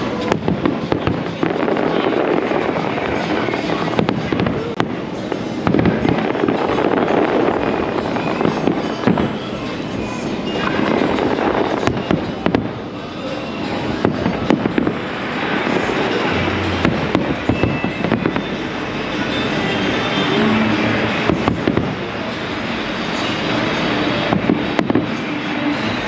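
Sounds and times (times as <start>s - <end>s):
fireworks bangs and crackling: 0.0s - 26.0s.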